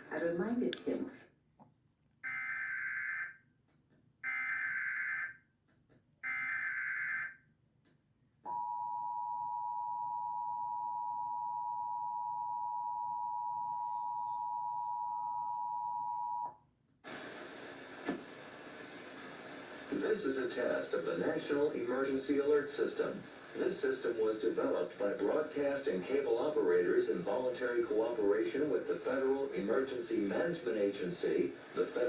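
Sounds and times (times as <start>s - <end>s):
steady hiss: 17.1s - 32.0s.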